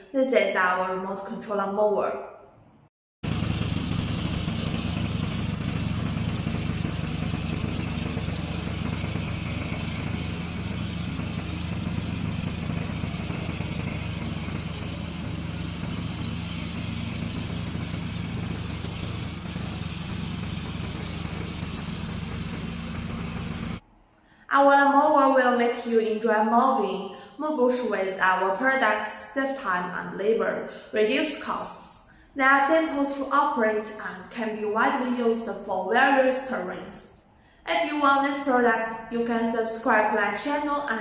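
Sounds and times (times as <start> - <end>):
mower engine droning: 3.2 - 23.8.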